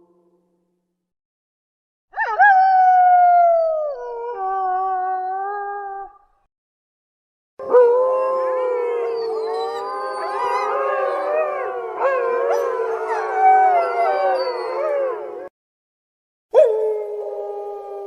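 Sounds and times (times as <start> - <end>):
wolves howling: 7.6 - 15.5, 16.5 - 18.0.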